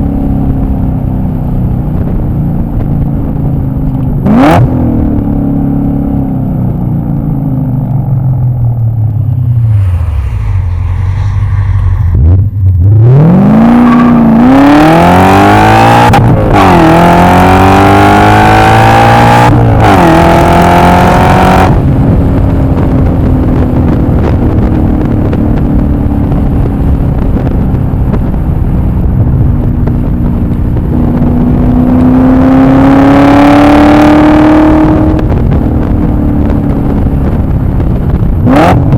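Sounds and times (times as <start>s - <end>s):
car engine accelerating hard: 0.0s - 38.9s.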